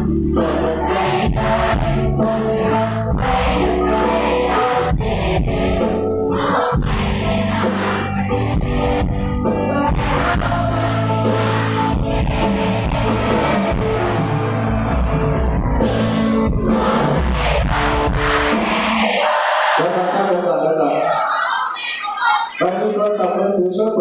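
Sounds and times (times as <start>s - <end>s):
person singing: 0.0s - 11.9s
live band playing: 0.0s - 19.1s.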